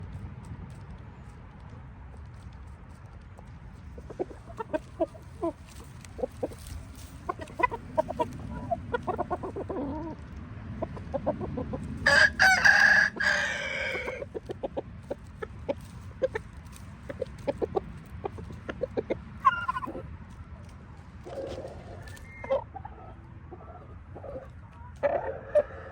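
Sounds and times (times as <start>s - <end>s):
chickens clucking: 0.7s - 25.9s
rooster crowing: 12.0s - 14.2s, 25.3s - 25.9s.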